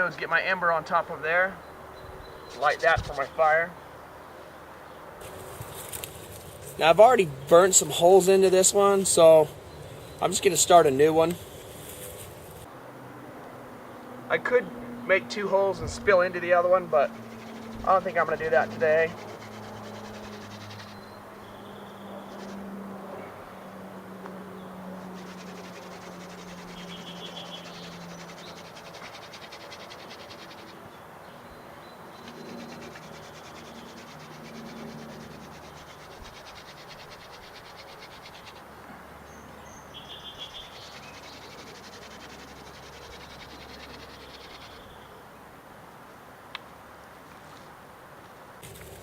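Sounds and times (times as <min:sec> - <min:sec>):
birds chirping: 0:00.0 - 0:12.7, 0:13.4 - 0:45.4
insects chirping: 0:01.6 - 0:12.7, 0:16.0 - 0:22.8
hand drill rubbing in wood: 0:08.0 - 0:12.7.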